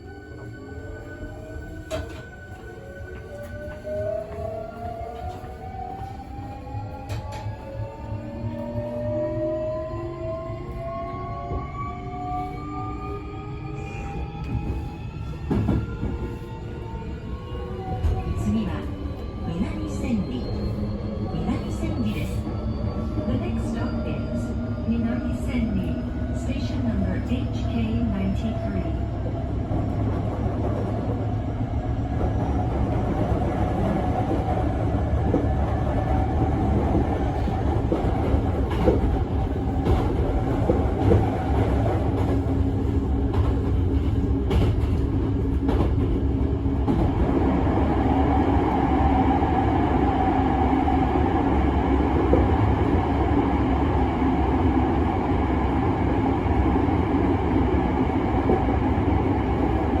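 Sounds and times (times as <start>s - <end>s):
train wheels rumbling on track: 25.0s - 60.0s.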